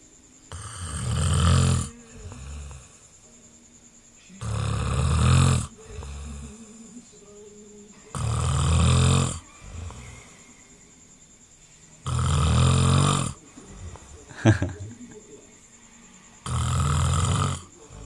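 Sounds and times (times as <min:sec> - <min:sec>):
person snoring loudly: 0:00.5 - 0:03.1, 0:04.4 - 0:06.9, 0:08.1 - 0:10.4, 0:12.0 - 0:14.8, 0:16.3 - 0:18.0
soft breathing: 0:09.4 - 0:12.0, 0:12.8 - 0:14.4.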